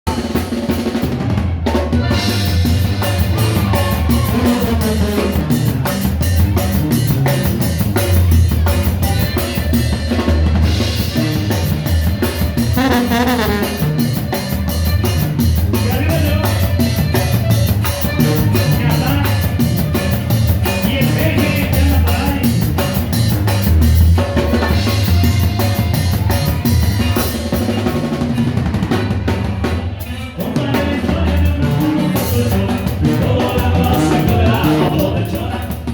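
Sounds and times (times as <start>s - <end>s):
loud dance music: 12.8s - 13.9s.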